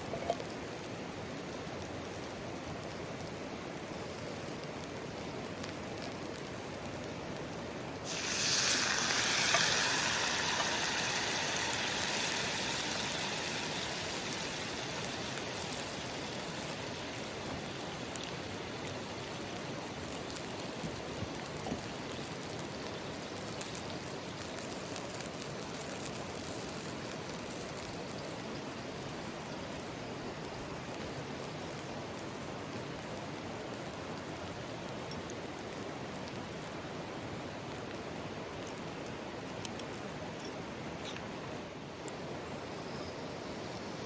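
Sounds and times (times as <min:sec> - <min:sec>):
mountain stream running: 0:08.0 - 0:20.8.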